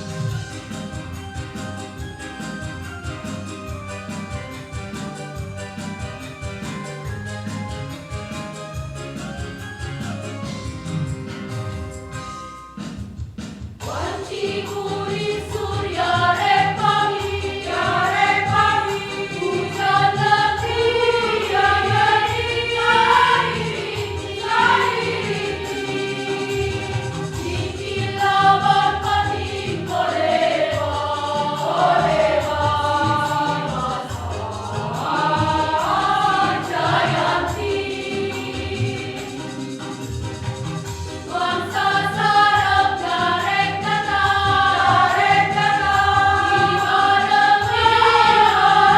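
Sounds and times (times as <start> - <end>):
choir singing: 0.0 - 1.6, 13.8 - 48.9.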